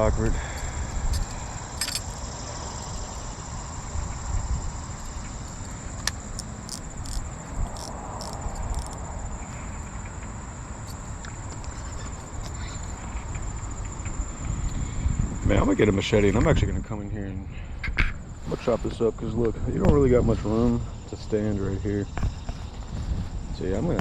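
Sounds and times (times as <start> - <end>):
insects chirring: 0.0 - 24.0.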